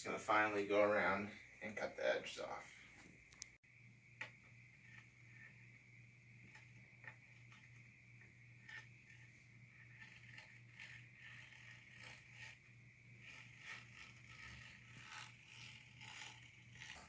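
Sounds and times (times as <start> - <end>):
steady low hum: 0.0 - 17.0
knife scratching mesh: 8.6 - 17.0.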